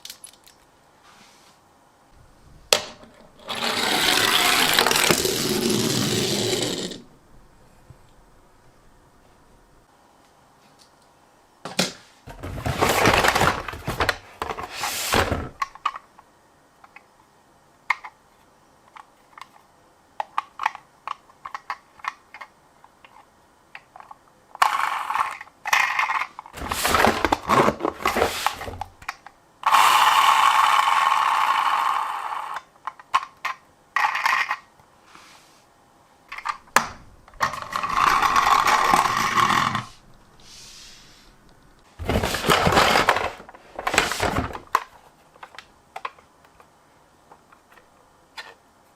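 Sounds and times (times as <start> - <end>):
toy cars clattering: 2.8 - 7.0, 23.8 - 28.9, 29.7 - 34.7, 37.4 - 39.9, 42.0 - 46.7.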